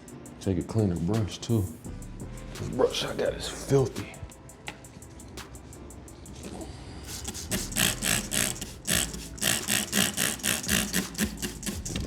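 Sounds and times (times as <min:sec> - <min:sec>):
stiff brush scrubbing metal: 0:07.1 - 0:12.0.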